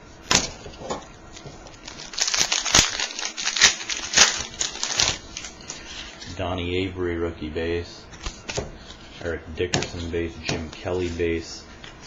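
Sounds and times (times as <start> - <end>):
foil wrapper tearing and crinkling: 1.6 - 6.1.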